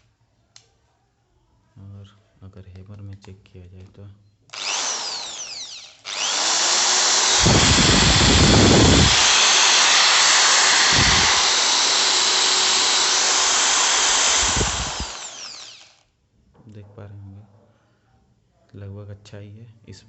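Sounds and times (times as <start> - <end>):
hammer drill whining: 4.5 - 16.0
heavy low rattling: 7.1 - 15.3.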